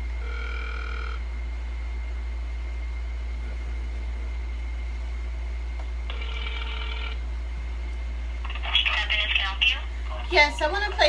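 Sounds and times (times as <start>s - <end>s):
steady low hum: 0.0s - 11.0s
telephone ringback tone: 0.2s - 1.2s, 6.1s - 7.2s.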